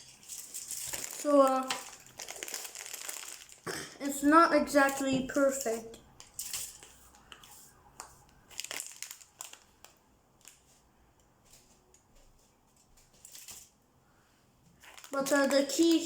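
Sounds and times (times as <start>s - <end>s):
foil crinkling and rustling: 0.0s - 5.7s, 8.5s - 12.0s, 12.7s - 13.8s, 14.7s - 16.0s.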